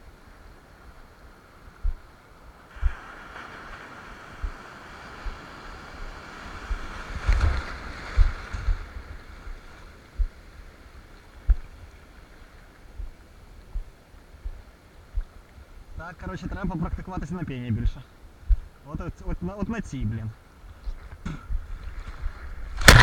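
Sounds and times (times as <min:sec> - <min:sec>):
ocean surf rushing: 0:01.3 - 0:11.0
wind buffeting microphone: 0:01.7 - 0:02.1, 0:02.7 - 0:12.0, 0:17.8 - 0:18.8.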